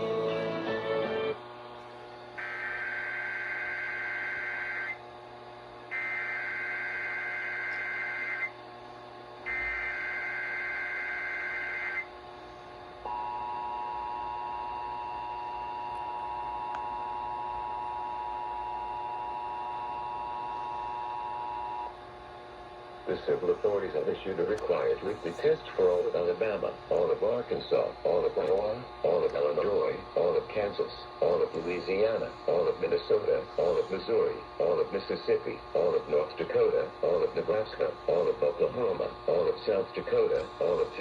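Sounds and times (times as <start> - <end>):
steady two-tone alert signal: 2.4 - 5.0, 5.9 - 8.5, 9.5 - 12.0.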